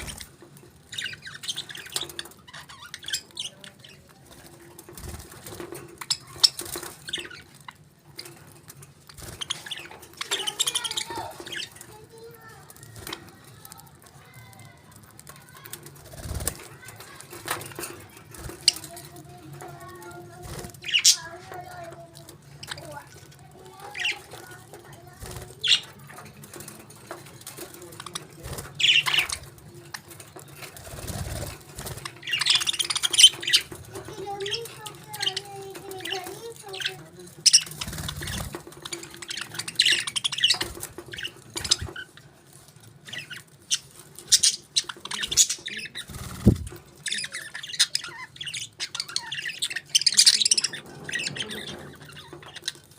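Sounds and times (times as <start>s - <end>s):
parakeets chirping: 0.0s - 52.9s
scratchy patter: 8.1s - 48.2s.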